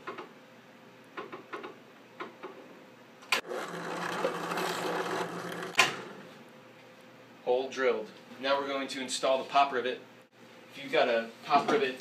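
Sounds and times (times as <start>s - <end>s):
drill press drilling plastic: 3.4s - 6.3s.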